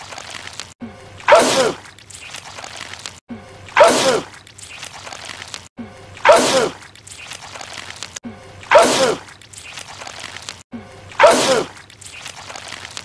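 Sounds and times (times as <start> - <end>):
person sneezing loudly: 1.2 - 1.8, 3.8 - 4.4, 6.2 - 6.8, 8.7 - 9.3, 11.1 - 11.8.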